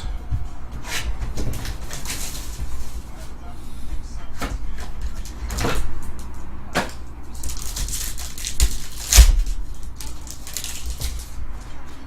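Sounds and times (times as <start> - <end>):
packaging rustling and scraping: 0.8 - 3.1, 7.4 - 11.4.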